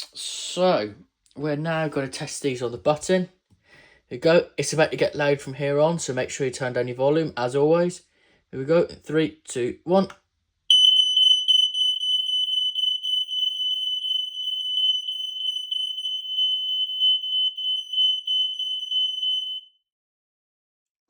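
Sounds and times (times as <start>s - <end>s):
smoke alarm tone: 10.7s - 19.8s.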